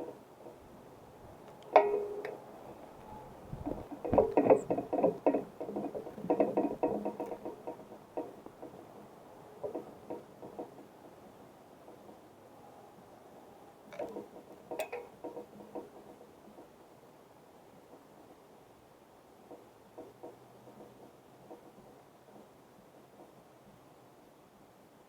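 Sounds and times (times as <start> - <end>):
birds pecking seed on feeder: 1.5 - 8.9.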